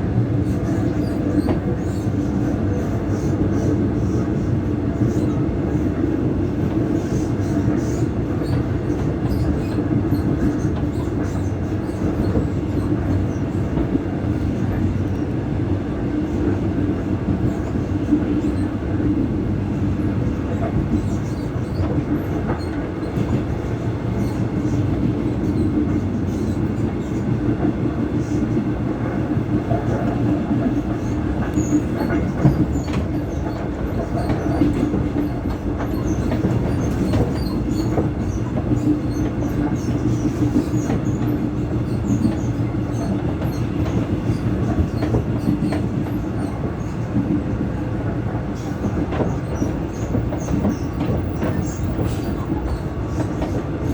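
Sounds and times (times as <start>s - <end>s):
train rolling noise: 0.0s - 53.9s.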